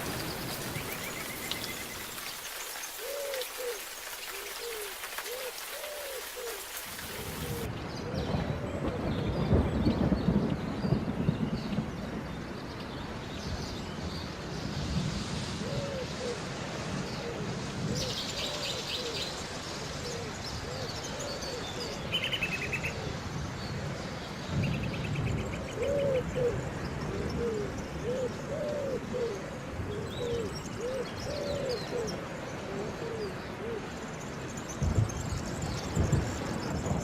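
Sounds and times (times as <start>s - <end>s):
birds trilling: 0.0s - 7.7s
steady rain: 0.0s - 37.0s.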